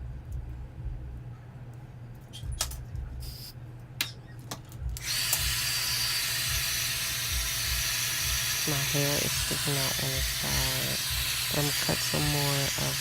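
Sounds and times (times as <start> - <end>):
small electric motor whining: 5.0 - 13.0.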